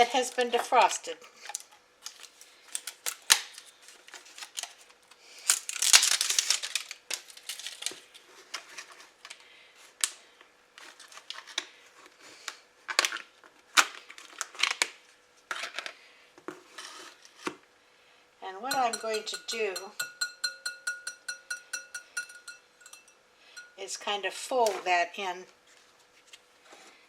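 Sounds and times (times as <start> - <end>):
utensil tapping plastic tub: 18.7 - 22.6.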